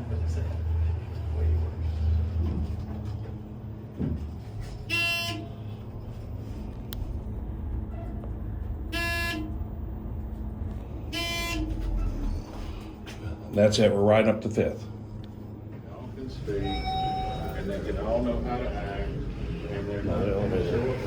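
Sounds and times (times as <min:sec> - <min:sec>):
elevator running: 0:14.8 - 0:21.0.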